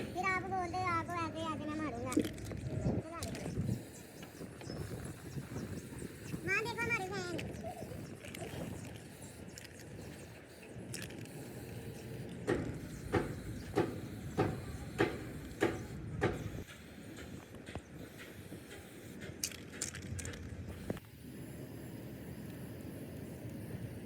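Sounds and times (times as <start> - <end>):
hammer blows on metal: 12.5 - 17.3.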